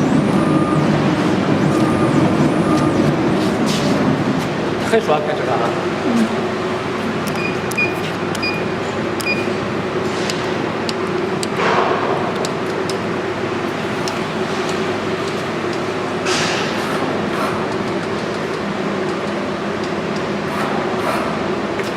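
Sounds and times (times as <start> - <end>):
short electronic beeps: 0.3 - 3.1.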